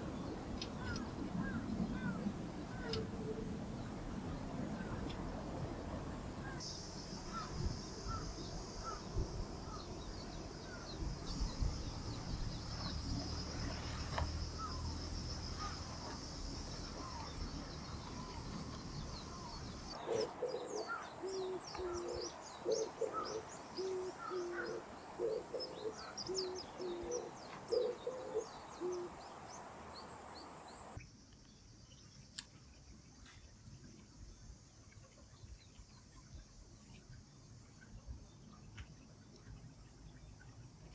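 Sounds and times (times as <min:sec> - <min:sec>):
insects trilling and chirping: 0:00.0 - 0:40.9
high insect drone: 0:04.8 - 0:20.0
bird chirping: 0:06.3 - 0:29.1.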